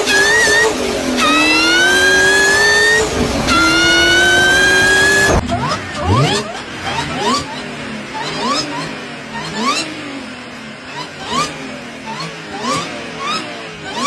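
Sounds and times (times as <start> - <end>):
car revving: 0.0 - 14.0
supercharger whine: 0.8 - 11.0.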